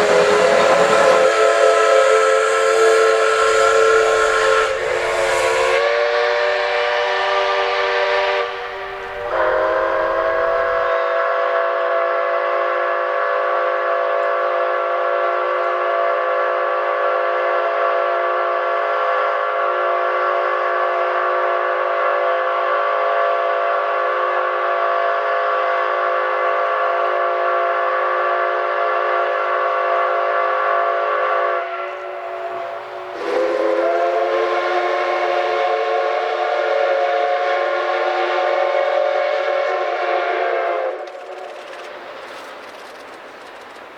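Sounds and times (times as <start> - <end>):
low locomotive rumble: 0.0 - 5.9, 7.2 - 10.9, 31.6 - 35.7, 39.9 - 43.9
steam locomotive whistle: 0.0 - 43.8.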